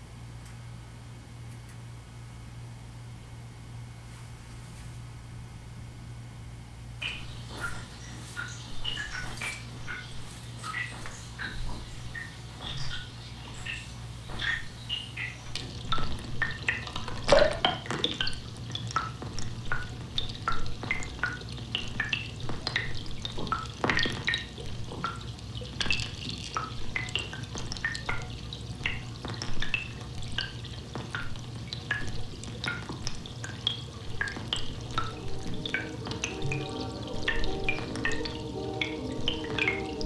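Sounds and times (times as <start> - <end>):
steady low hum: 0.0 - 23.6, 26.0 - 40.0
water dripping and plinking: 7.0 - 40.0.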